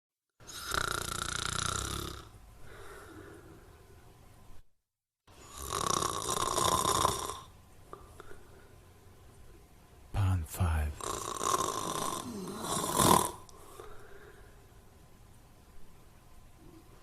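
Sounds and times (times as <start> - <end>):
person snoring: 0.5 - 2.3, 5.4 - 7.5, 10.6 - 13.4
quiet breath: 2.6 - 4.0, 7.9 - 9.1, 13.5 - 14.8.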